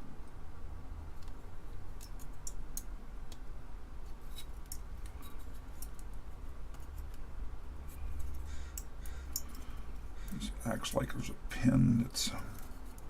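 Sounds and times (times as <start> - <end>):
low steady hum: 0.0 - 13.0
small metallic clicks and ticks: 1.2 - 3.4, 4.3 - 7.2, 8.0 - 10.5.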